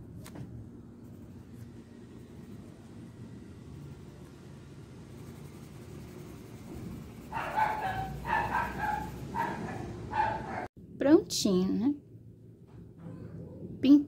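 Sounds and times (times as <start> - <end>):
dog barking: 7.3 - 10.7.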